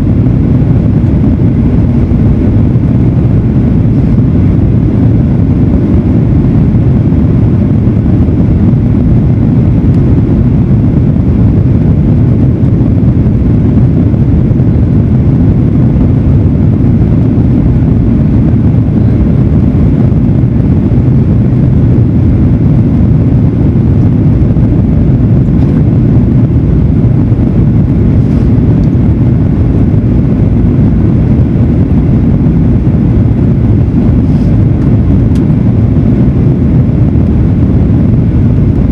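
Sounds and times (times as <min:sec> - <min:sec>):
jet engine cabin rumble: 0:00.0 - 0:38.9
rushing airflow: 0:00.0 - 0:38.9.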